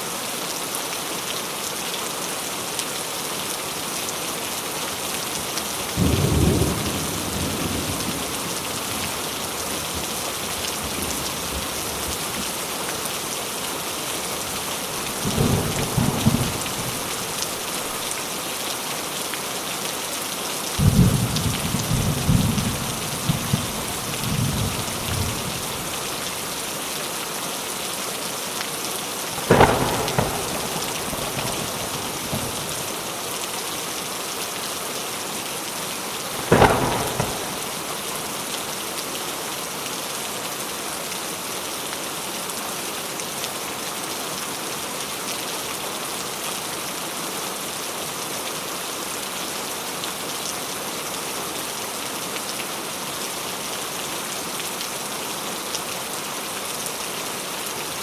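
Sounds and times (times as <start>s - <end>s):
heavy rain hissing: 1.1s - 41.4s
low thunder rumbling: 5.9s - 12.5s, 14.3s - 18.2s, 20.8s - 26.6s, 29.4s - 33.2s, 36.4s - 38.6s
sharp thunderclaps: 14.4s - 18.1s, 20.8s - 26.5s, 29.4s - 33.1s, 36.4s - 38.5s.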